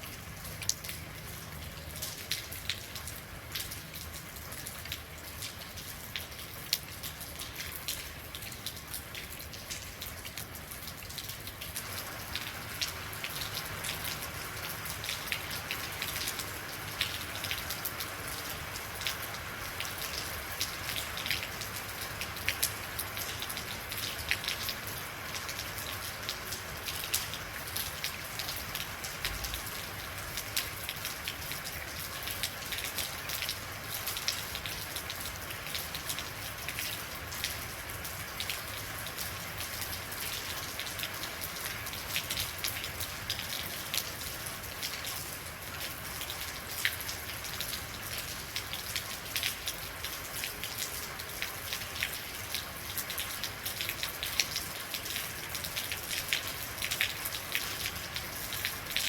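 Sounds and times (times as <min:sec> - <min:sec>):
rain falling steadily: 0:00.0 - 0:59.0
raindrops ticking close by: 0:00.0 - 0:59.0.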